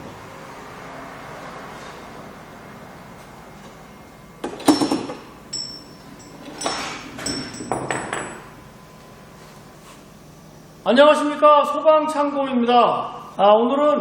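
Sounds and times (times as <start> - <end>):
metal clank: 4.5 - 8.5
bicycle bell ringing: 4.7 - 8.6.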